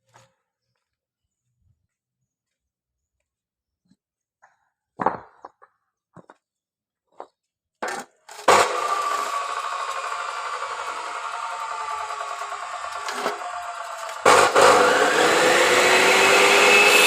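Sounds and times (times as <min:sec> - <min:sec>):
power cutting tool running: 0:08.4 - 0:17.0.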